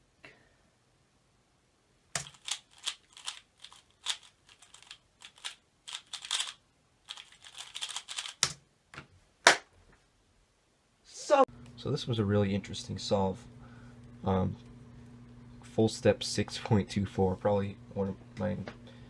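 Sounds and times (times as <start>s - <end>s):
plastic puzzle cube clicking: 2.2s - 8.5s.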